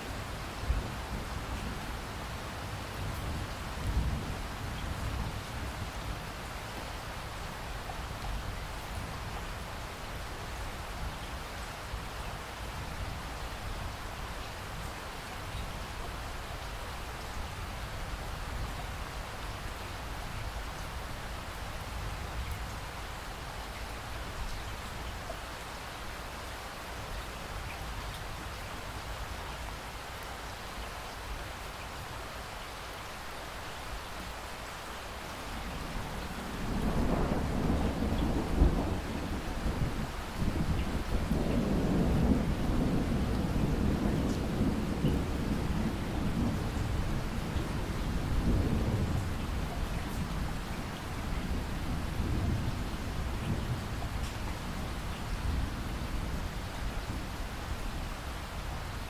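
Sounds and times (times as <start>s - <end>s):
steady rain: 0.0s - 59.0s
thunder rolling: 36.5s - 56.4s.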